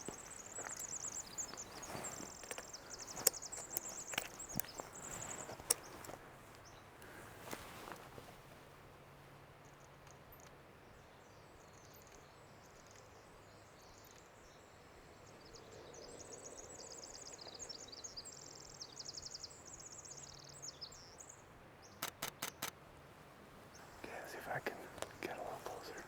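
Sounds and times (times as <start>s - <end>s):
wren singing trills: 0.0s - 6.8s
sharp clicks: 22.0s - 22.8s.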